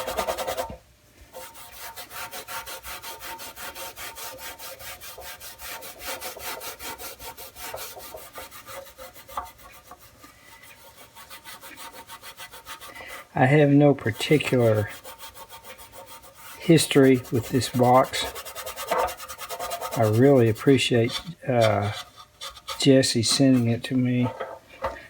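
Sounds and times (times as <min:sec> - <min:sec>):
abrasive scrubbing steel: 0:01.4 - 0:25.0.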